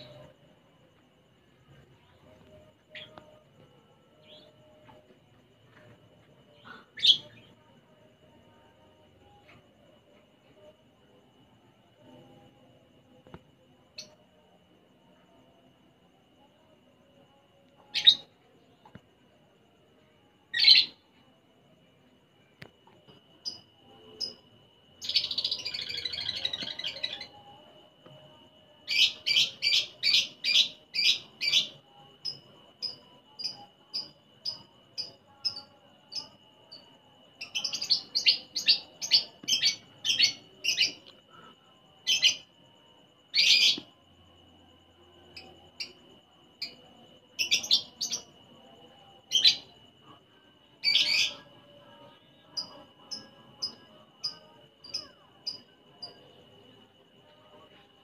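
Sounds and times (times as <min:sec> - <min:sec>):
lovebird chirping: 0:25.0 - 0:27.5.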